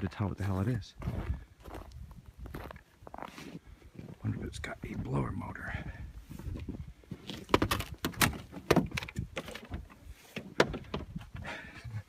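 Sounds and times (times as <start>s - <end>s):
car parts clicking and rattling: 7.2s - 11.7s.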